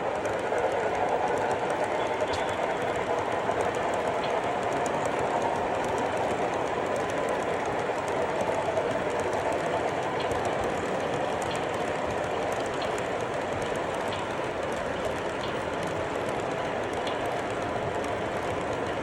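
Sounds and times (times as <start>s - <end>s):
train rolling on rails: 0.0s - 19.0s
wheel clicks: 0.0s - 19.0s.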